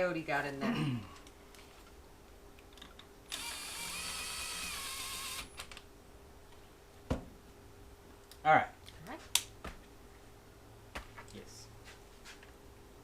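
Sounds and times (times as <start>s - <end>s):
faint steady hum: 0.0s - 13.0s
power tool motor running: 3.3s - 5.5s.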